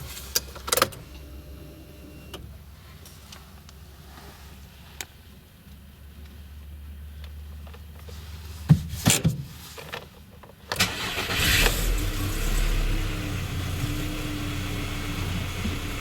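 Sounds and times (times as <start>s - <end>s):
car engine cranking and idling: 9.8s - 16.0s.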